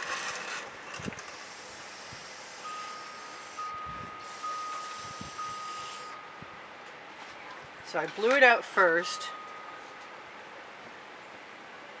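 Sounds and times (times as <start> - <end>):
steady wind-like hiss: 0.0 - 12.0
electronic alarm tone: 2.6 - 6.6.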